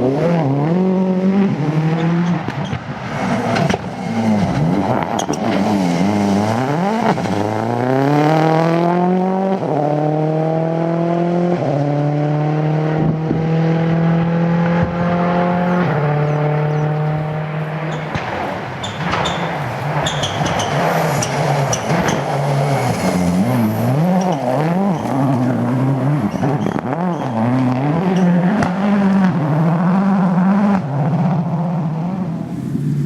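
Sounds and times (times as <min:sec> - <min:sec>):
rally car engine revving: 0:00.0 - 0:33.0
gear upshifts: 0:13.9 - 0:29.2.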